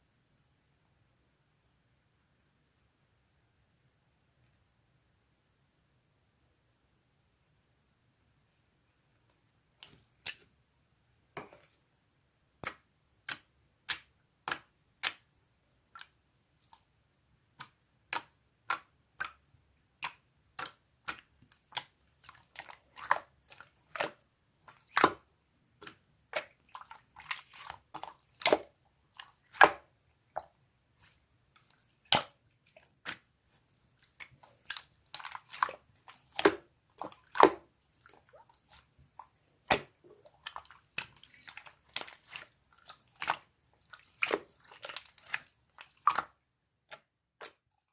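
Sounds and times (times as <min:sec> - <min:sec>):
wet clicks and smacks: 0:09.8 - 0:10.5, 0:12.6 - 0:15.3, 0:15.9 - 0:16.9, 0:17.5 - 0:47.7.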